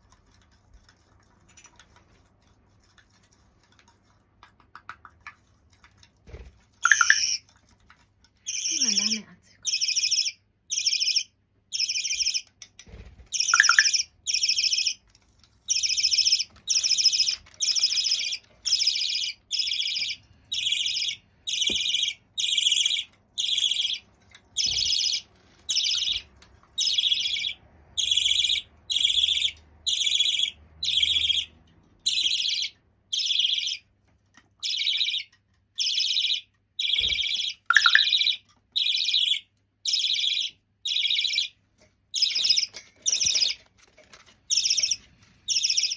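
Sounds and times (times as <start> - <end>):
budgerigar chick calling: 6.8 - 7.4, 35.8 - 41.5.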